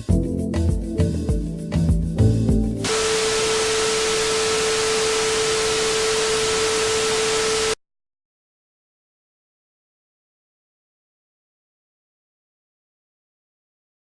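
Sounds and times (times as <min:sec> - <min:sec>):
steady mid-pitched tone: 0:02.7 - 0:07.8
radio static hiss: 0:02.8 - 0:07.8.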